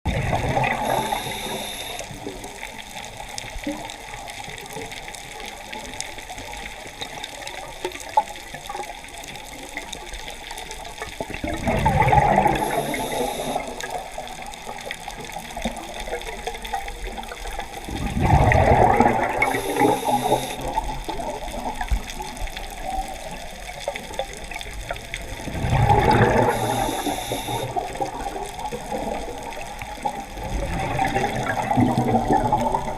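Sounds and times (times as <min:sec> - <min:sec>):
diver exhaling bubbles: 0:00.1 - 0:02.0, 0:11.4 - 0:13.7, 0:17.9 - 0:20.9, 0:25.4 - 0:28.2, 0:30.5 - 0:32.9
underwater hiss: 0:00.4 - 0:02.6, 0:11.8 - 0:14.0, 0:17.9 - 0:20.9, 0:25.4 - 0:28.2
thin high tone: 0:00.8 - 0:02.1.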